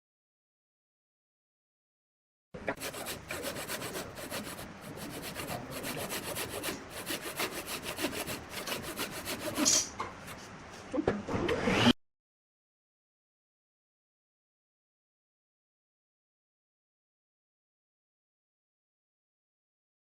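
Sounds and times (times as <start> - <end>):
tool scraping wood: 2.7 - 10.4.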